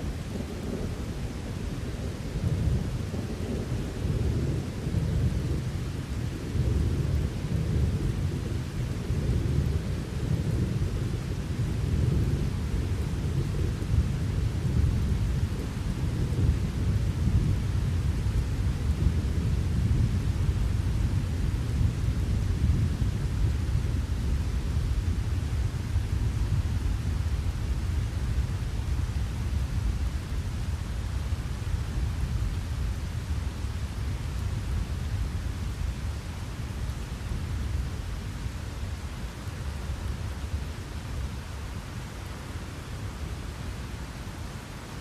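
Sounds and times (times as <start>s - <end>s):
rolling thunder: 0.0s - 32.9s
steady rain: 0.0s - 45.0s.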